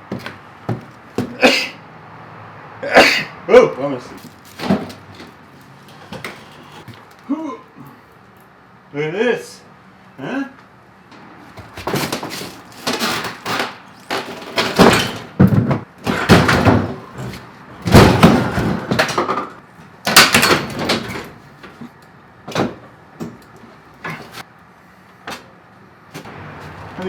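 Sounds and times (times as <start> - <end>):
refrigerator knocking and scraping: 0.0 - 1.4, 4.1 - 7.1, 11.6 - 21.9.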